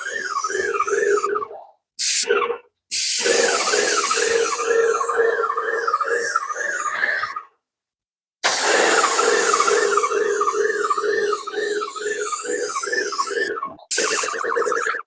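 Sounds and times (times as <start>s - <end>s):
spray hissing: 2.9s - 4.7s, 8.4s - 14.4s
paint sprayer pump whine: 3.0s - 6.9s, 8.4s - 15.0s.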